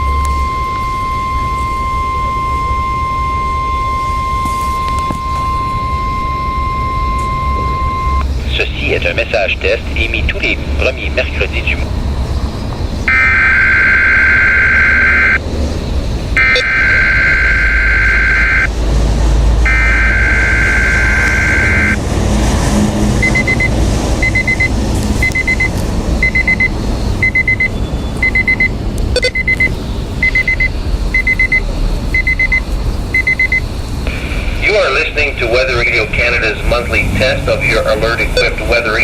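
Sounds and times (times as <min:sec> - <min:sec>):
warbling data squawk bursts: 0:00.0 - 0:08.2, 0:13.1 - 0:15.4, 0:16.4 - 0:18.7, 0:19.7 - 0:22.0
weather radio alarm beeping: 0:00.0 - 0:11.9, 0:13.1 - 0:15.4, 0:16.4 - 0:18.7, 0:19.7 - 0:22.0, 0:23.2 - 0:39.0.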